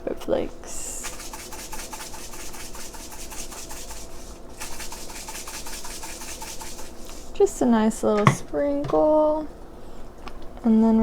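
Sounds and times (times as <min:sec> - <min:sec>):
pepper flakes shaken from container: 0:00.7 - 0:07.6.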